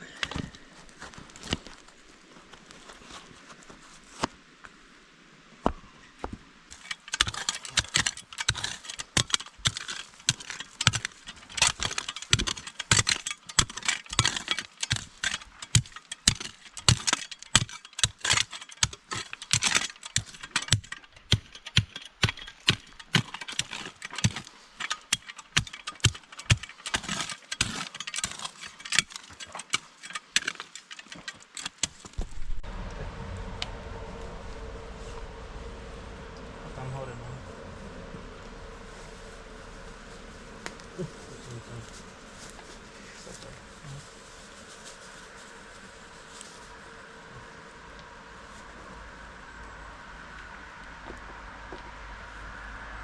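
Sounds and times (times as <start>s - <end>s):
dense clatter of clicks and knocks: 6.7s - 32.0s.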